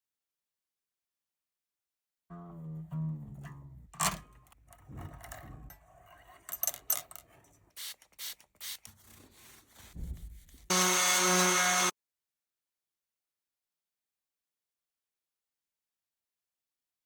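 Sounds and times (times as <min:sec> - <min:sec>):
hands and tools scraping guitar: 0:08.8 - 0:10.7.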